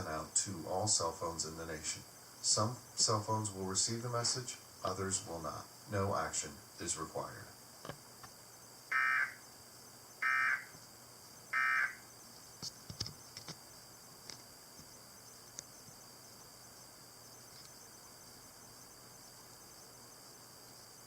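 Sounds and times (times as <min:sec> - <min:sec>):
faint steady hiss: 0:00.0 - 0:21.0
sharp clicks: 0:12.6 - 0:13.6.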